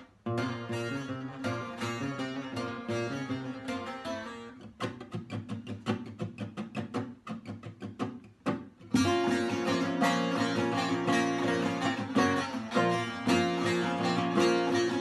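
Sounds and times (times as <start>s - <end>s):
strummed lute and guitar music: 0.0s - 15.0s.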